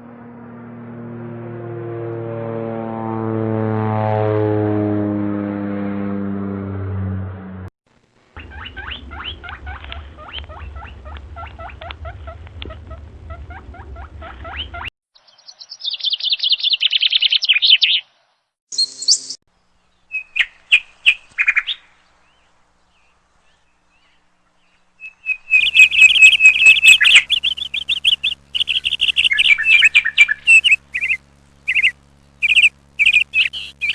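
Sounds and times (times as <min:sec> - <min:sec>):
low hum: 0:00.0 - 0:14.9, 0:18.9 - 0:33.9
loud repeated high bird calls: 0:08.4 - 0:12.4, 0:13.3 - 0:19.4, 0:20.1 - 0:22.4, 0:23.0 - 0:33.9
birds chirping and calling: 0:08.4 - 0:18.1, 0:18.7 - 0:19.4, 0:20.0 - 0:33.9.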